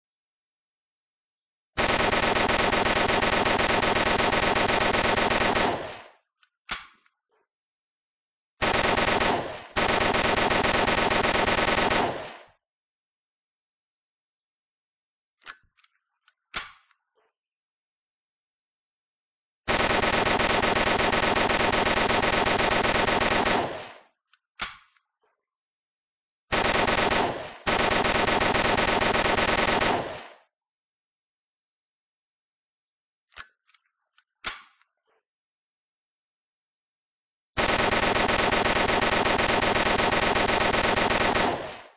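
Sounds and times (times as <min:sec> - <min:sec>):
submachine gun automatic fire: 0:01.8 - 0:06.2, 0:08.6 - 0:12.6, 0:19.7 - 0:24.1, 0:26.5 - 0:30.5, 0:37.6 - 0:41.9.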